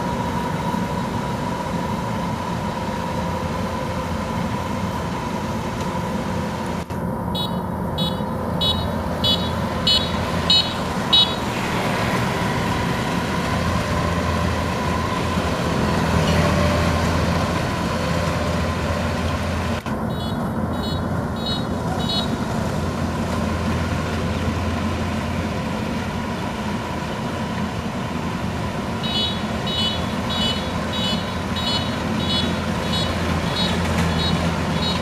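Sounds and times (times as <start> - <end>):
combine harvester running with whine: 0.0 - 35.0
warning beeper short beeps: 7.4 - 11.4.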